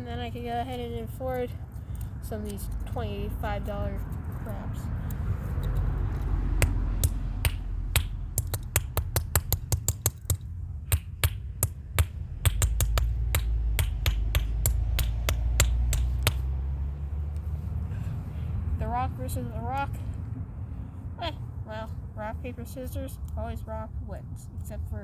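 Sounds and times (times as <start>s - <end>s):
steady low hum: 0.0s - 17.7s
hard object knocking on plastic keypad: 6.6s - 16.4s.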